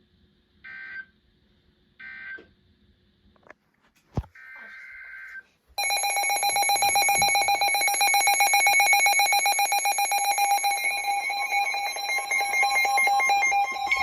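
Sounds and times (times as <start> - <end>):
rapid pulsing electronic beep: 5.9 - 14.0.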